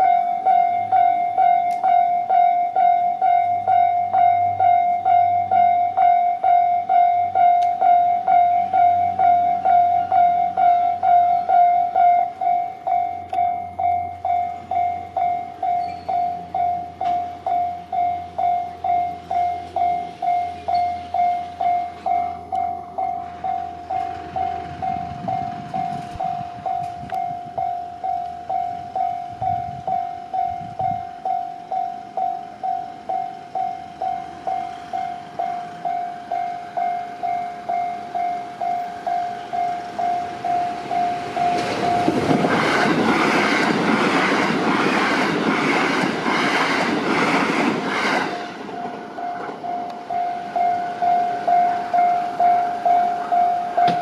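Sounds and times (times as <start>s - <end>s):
level-crossing alarm ringing: 0.0s - 54.0s
train wheels clattering: 37.7s - 54.0s.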